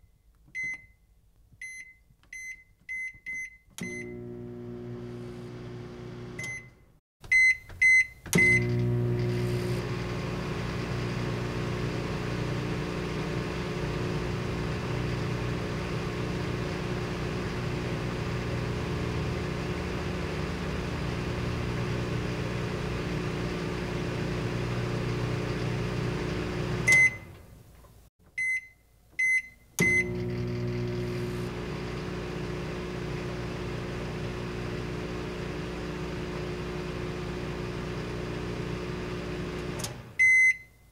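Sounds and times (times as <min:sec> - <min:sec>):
microwave keypad beeps: 0:00.6 - 0:01.0, 0:01.6 - 0:04.3, 0:06.4 - 0:08.8, 0:26.9 - 0:27.3, 0:28.4 - 0:30.2, 0:40.2 - 0:40.9
microwave finish beep: 0:01.6 - 0:05.2, 0:06.3 - 0:09.9, 0:26.8 - 0:27.4, 0:28.4 - 0:31.5, 0:40.2 - 0:40.9
microwave oven humming: 0:03.8 - 0:06.8, 0:08.3 - 0:27.5, 0:29.8 - 0:40.6.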